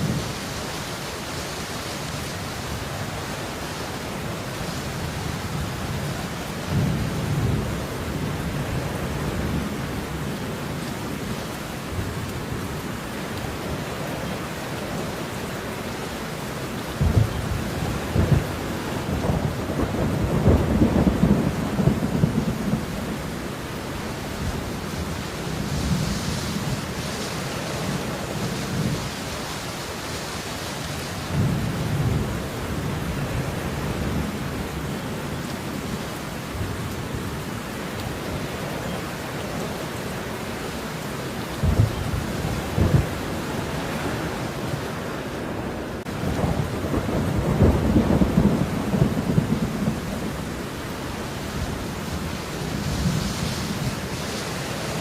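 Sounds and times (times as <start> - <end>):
heavy rainfall: 0.0 - 55.0
low rumble of thunder: 5.0 - 10.6, 17.0 - 27.0, 31.2 - 35.9, 41.6 - 44.3, 46.0 - 54.2.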